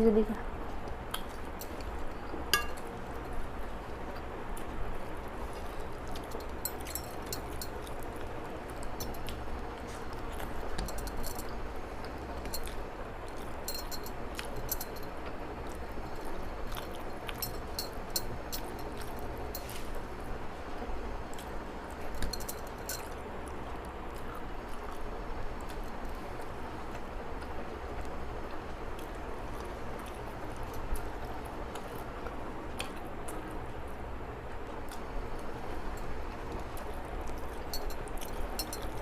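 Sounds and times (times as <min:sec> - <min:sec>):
steady background noise: 0:00.0 - 0:39.0
small clicks and clinks: 0:06.2 - 0:07.9, 0:13.7 - 0:15.1, 0:22.2 - 0:23.2, 0:37.7 - 0:39.0.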